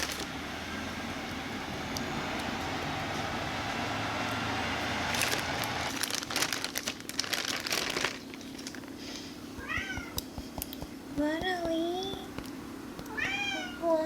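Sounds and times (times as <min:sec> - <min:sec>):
crinkling while handled: 0:05.1 - 0:09.3
cat meowing: 0:09.6 - 0:10.2, 0:13.1 - 0:13.9.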